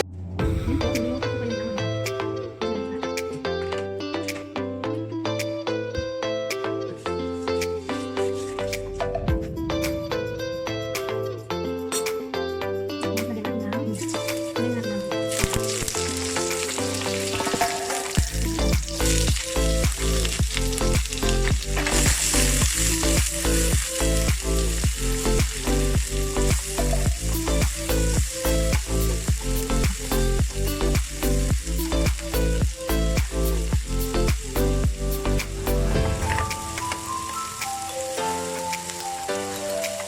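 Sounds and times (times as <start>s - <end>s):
background music with a beat: 0.4s - 14.6s, 15.3s - 40.0s
food sizzling in a pan: 14.0s - 40.0s
deep bass line: 18.2s - 36.4s.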